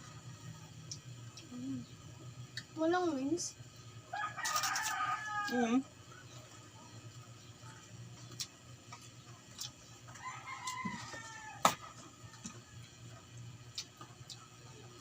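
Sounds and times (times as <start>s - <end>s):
faint rooster crowing: 4.1s - 5.9s, 10.1s - 13.2s.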